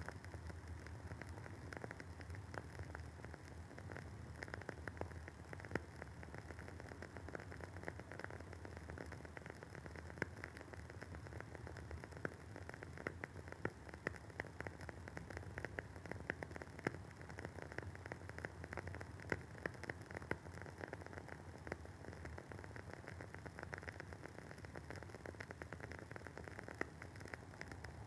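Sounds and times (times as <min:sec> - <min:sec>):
faint steady hiss: 0:00.0 - 0:28.0.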